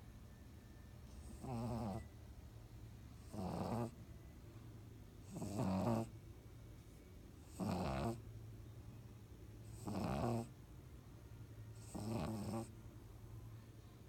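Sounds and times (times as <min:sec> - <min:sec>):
dog snoring: 0:01.1 - 0:02.1, 0:03.2 - 0:04.0, 0:05.2 - 0:06.2, 0:07.4 - 0:08.2, 0:09.6 - 0:10.6, 0:11.7 - 0:12.8.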